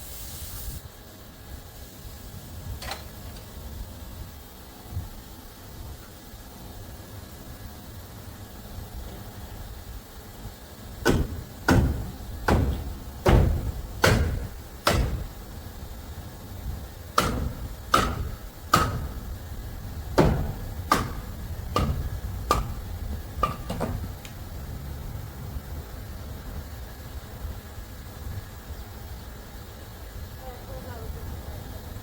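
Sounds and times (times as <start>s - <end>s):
hammer driving nails into wood: 11.0s - 15.4s, 17.2s - 19.4s, 20.2s - 24.0s.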